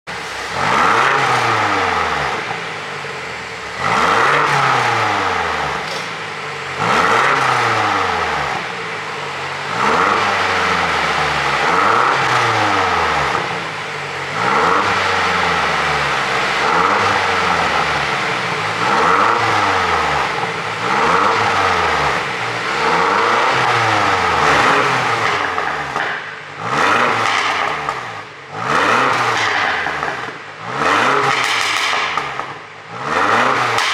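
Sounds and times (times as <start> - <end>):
engine revving: 0.1 - 33.9
exhaust pops and crackles: 13.1 - 32.7.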